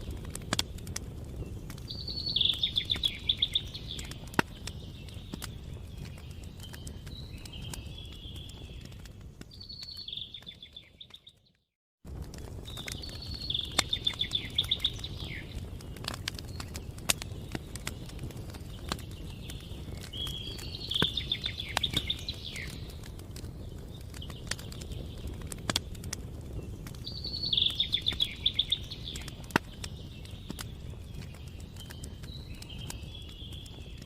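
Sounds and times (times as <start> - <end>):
campfire crackling and popping: 0.0 - 34.0
songbird trilling: 1.9 - 4.1, 13.0 - 15.5, 20.1 - 22.8, 27.1 - 29.4.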